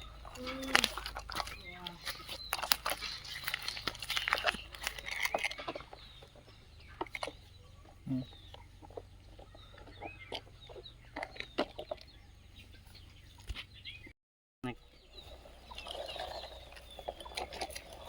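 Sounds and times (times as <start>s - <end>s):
chickens clucking: 0.0s - 14.0s, 15.0s - 18.0s.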